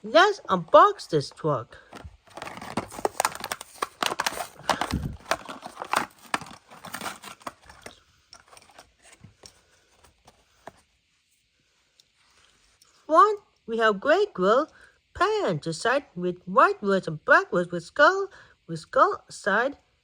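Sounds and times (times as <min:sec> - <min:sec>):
plastic packaging crinkling and tearing: 0:01.8 - 0:10.3.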